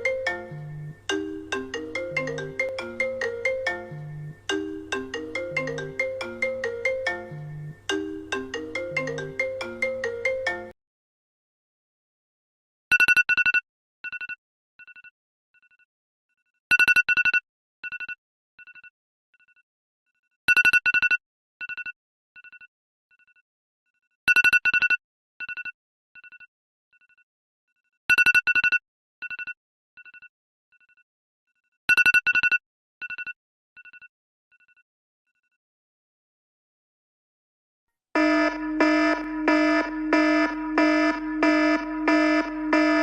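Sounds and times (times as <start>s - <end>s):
ringtone beeps: 0.0s - 10.8s, 38.2s - 43.0s.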